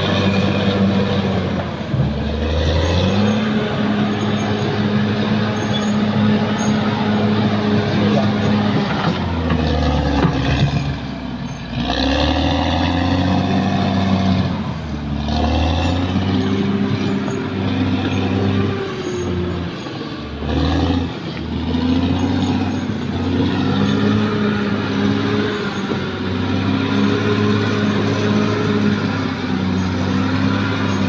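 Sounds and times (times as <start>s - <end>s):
bulldozer diesel engine: 0.0s - 31.0s.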